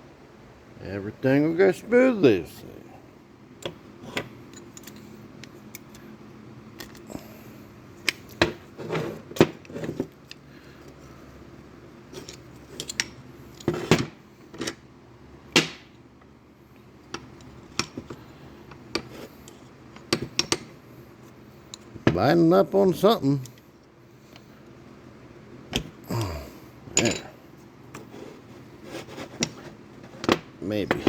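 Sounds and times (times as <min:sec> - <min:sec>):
hand tools clinking on metal: 0:27.0 - 0:27.4.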